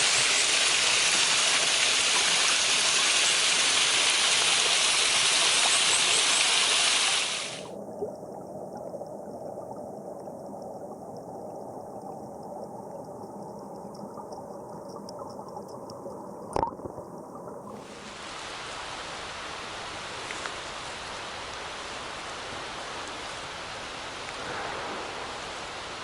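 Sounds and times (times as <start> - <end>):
stream water gurgling over rocks: 0.0 - 8.0.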